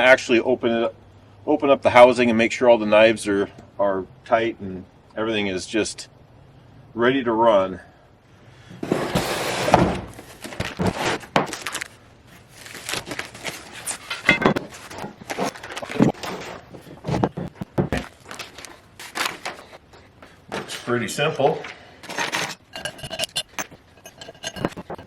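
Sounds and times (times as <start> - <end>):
short rustling: 8.8 - 21.1
metal tools clanking and rattling: 12.8 - 17.3, 22.0 - 25.0.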